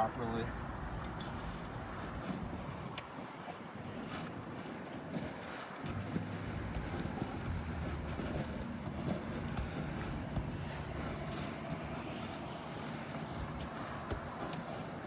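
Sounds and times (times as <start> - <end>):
wind buffeting microphone: 0.0 - 15.0
light taps and scraping on shingle: 1.1 - 15.0.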